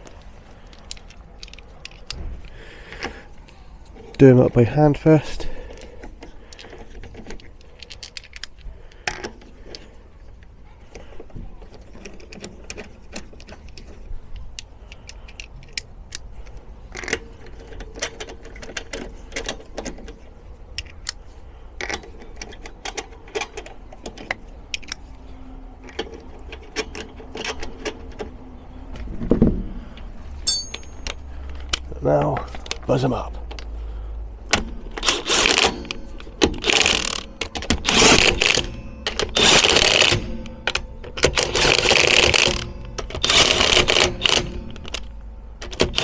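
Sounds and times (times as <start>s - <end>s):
metallic clinks of wheel bolts: 30.4s - 31.9s.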